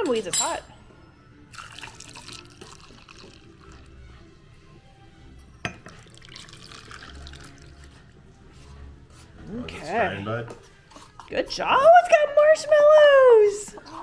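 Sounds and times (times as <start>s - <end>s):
milk trickling into a mug: 1.5s - 4.0s, 5.8s - 8.1s
mug clink: 5.6s - 7.0s.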